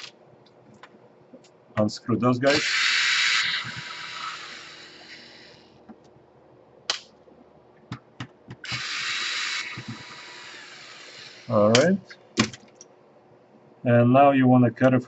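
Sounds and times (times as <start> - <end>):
electric screwdriver running: 2.5 - 5.7, 8.6 - 11.6.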